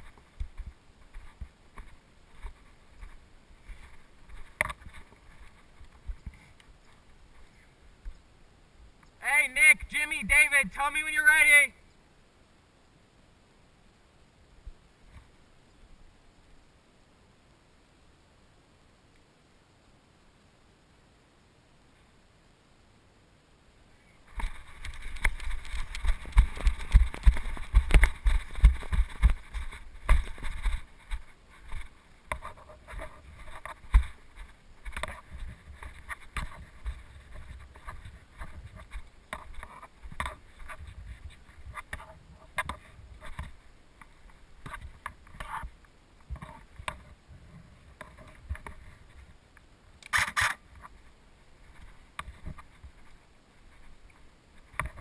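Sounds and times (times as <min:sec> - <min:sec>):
footsteps: 0:00.0 - 0:08.2, 0:24.2 - 0:49.4
camera jostling thumps: 0:24.3 - 0:43.6.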